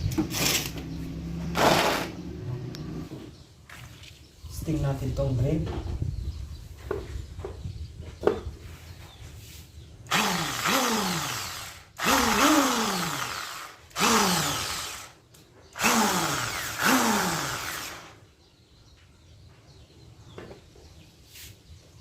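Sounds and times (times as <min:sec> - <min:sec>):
electric drill motor revving: 0:00.4 - 0:02.2, 0:10.1 - 0:15.2, 0:15.8 - 0:18.2.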